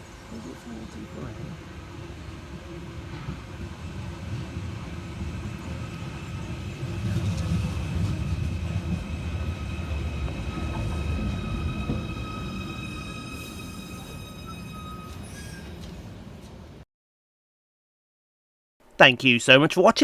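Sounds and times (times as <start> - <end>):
electric train rumble: 0.0 - 16.8.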